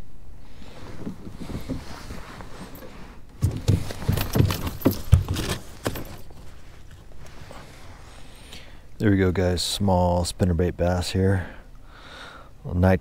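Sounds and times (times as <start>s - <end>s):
knocks and rattles: 2.7s - 6.5s.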